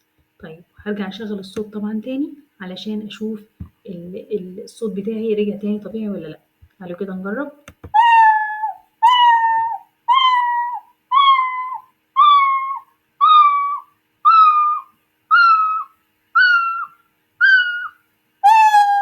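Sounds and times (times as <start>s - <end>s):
cartoon cat meows: 8.0s - 19.0s.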